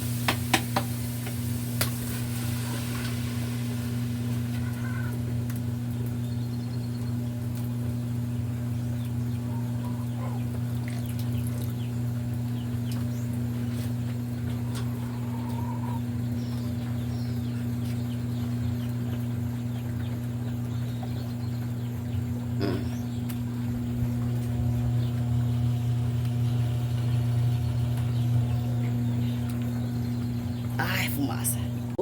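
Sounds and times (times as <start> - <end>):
steady low hum: 0.0 - 32.0
birds calling: 3.9 - 32.0
chickens clucking: 8.8 - 30.4.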